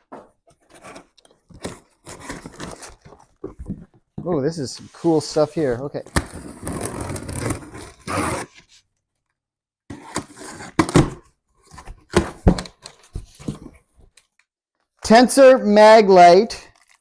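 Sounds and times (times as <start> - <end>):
packaging rustling and scraping: 0.4 - 4.1, 4.8 - 8.9, 16.7 - 17.0
items knocking and clattering: 2.5 - 4.3, 10.8 - 13.9.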